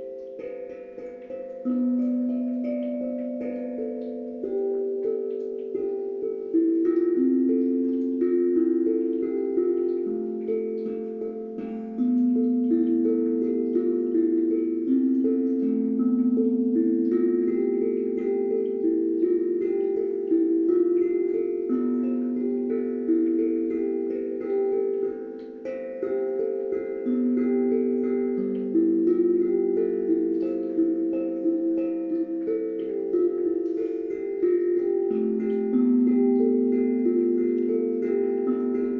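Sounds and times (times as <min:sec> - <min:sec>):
calm instrumental music: 0:00.0 - 0:38.9.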